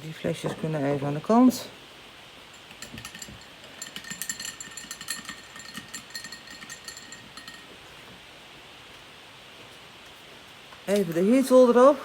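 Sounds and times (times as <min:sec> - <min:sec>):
paint bottles clinking together: 0:02.6 - 0:07.8.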